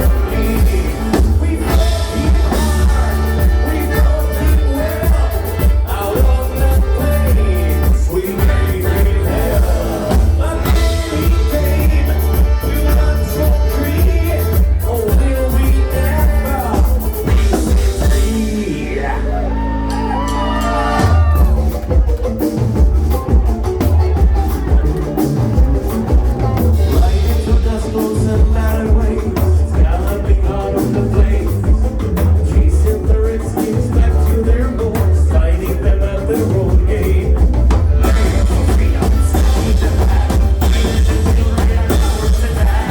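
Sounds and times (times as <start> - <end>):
steady drum beat: 0.0 - 19.0, 20.0 - 42.9
live bluegrass band playing: 0.0 - 42.9.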